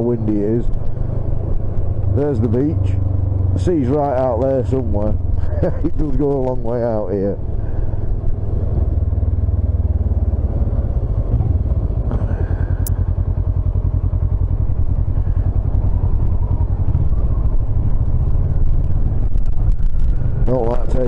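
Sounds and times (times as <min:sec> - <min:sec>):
motorcycle engine rumble: 0:00.0 - 0:21.0
wind noise on microphone: 0:15.1 - 0:20.6.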